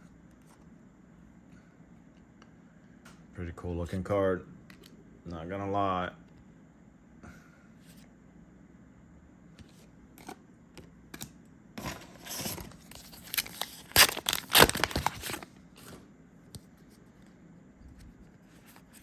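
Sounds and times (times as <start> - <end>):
wrapper tearing and crinkling: 12.9 - 15.5.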